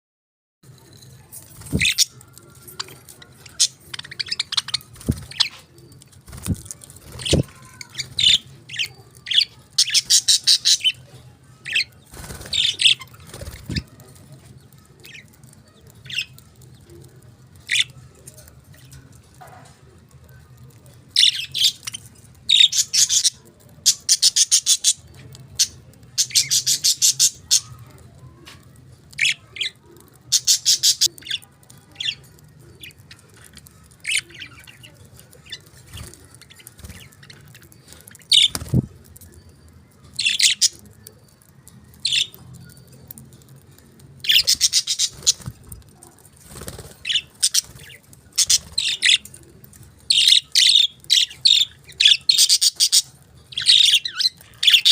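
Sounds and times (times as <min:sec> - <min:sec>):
budgerigars chirping: 0:48.4 - 0:49.2.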